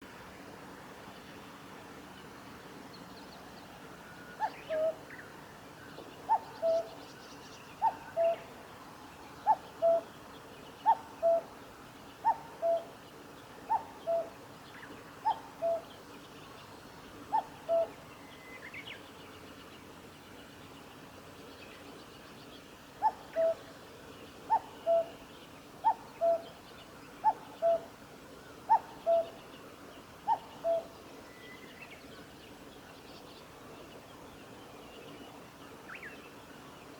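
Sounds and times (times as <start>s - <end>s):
cuckoo calling: 4.4s - 5.0s, 6.3s - 6.9s, 7.8s - 8.4s, 9.4s - 10.1s, 10.8s - 11.5s, 12.2s - 12.9s, 13.7s - 14.4s, 15.2s - 15.9s, 17.3s - 18.0s, 23.0s - 23.6s, 24.5s - 25.2s, 25.8s - 26.5s, 27.2s - 27.9s, 28.7s - 29.4s, 30.2s - 30.9s.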